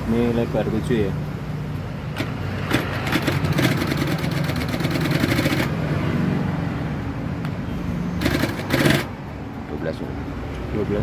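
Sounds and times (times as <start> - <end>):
sewing machine motor hum: 2.2 - 5.7, 8.2 - 9.1
sewing machine stitching: 2.2 - 5.7, 8.2 - 9.1.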